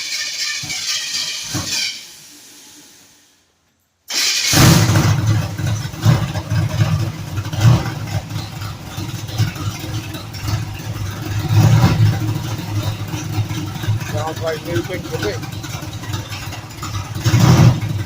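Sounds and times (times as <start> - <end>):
car engine revving: 4.1 - 18.0.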